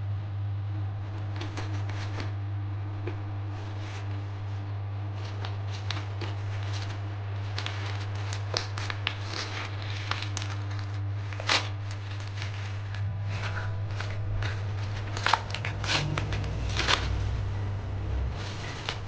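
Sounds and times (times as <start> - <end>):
steady low hum: 0.0 - 19.0
packaging rustling: 1.2 - 2.4, 5.2 - 19.0.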